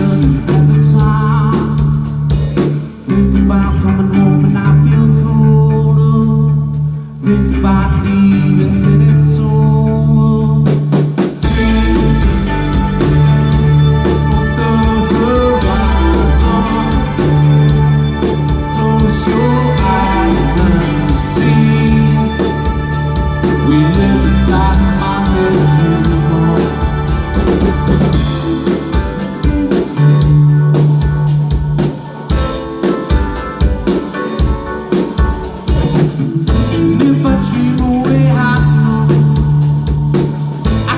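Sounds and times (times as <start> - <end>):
drums: 0.0 - 40.9
live rock band playing: 0.0 - 40.9.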